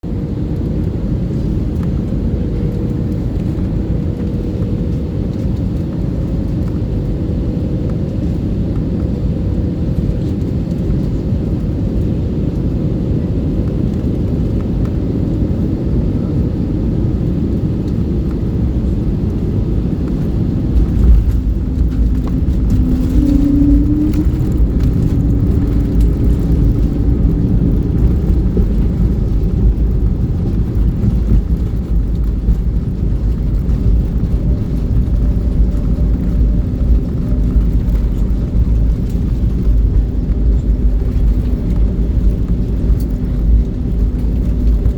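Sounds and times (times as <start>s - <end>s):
aircraft low rumble: 0.0s - 44.9s
jet engine tone rising: 19.2s - 30.6s.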